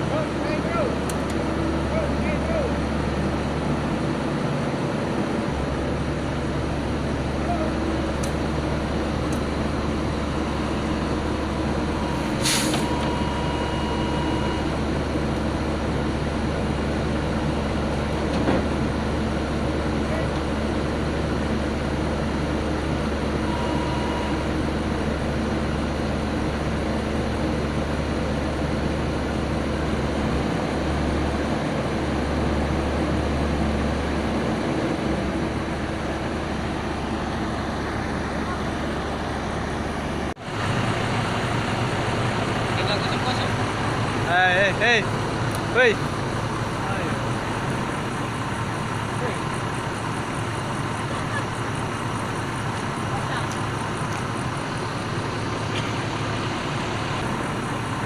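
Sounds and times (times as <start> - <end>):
diesel engine rumbling: 0.0 - 58.0
sharp air hiss: 12.2 - 13.0.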